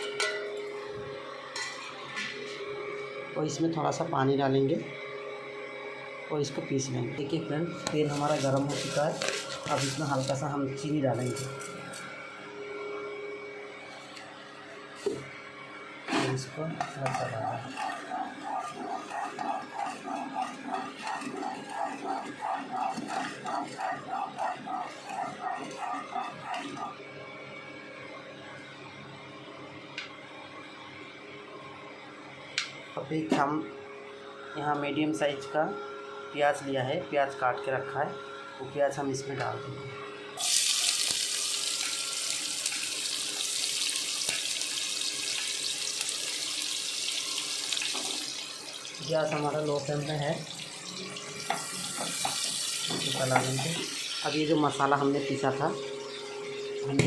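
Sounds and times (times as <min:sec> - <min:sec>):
onion sizzling in hot oil: 0:08.1 - 0:10.4, 0:40.4 - 0:57.0.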